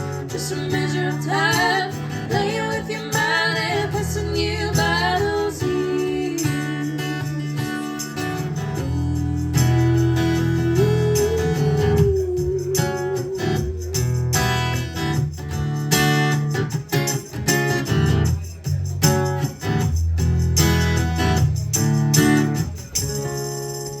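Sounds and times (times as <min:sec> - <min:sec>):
bass notes: 0:08.3 - 0:15.9.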